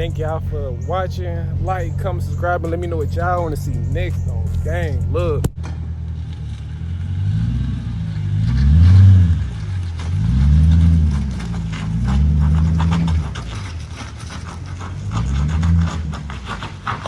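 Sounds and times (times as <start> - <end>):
car engine revving: 0.0 - 17.0.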